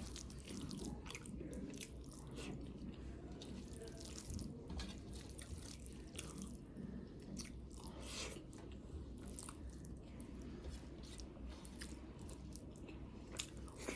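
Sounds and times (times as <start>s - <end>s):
person chewing crunchy food: 0.0s - 2.5s, 11.0s - 13.9s.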